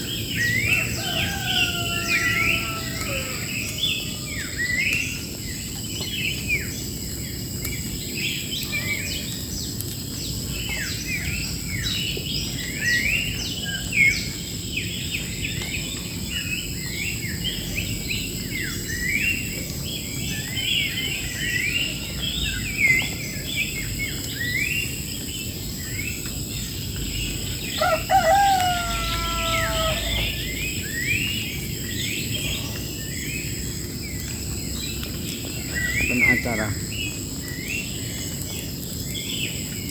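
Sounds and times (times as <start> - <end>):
small birds chirping: 0.0 - 39.9
rooster crowing: 0.4 - 4.8, 27.6 - 31.1.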